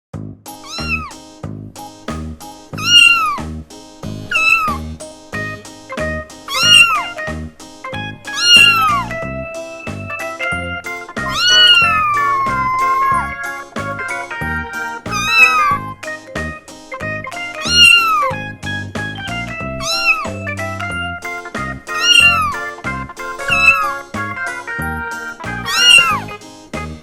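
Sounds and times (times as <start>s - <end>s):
background music with beat: 0.2s - 27.0s
kitten meowing: 0.6s - 1.1s, 2.8s - 3.4s, 4.3s - 4.8s, 6.5s - 7.2s, 8.0s - 14.1s, 14.8s - 15.9s, 17.6s - 18.5s, 19.7s - 20.5s, 21.9s - 24.4s, 25.6s - 26.3s.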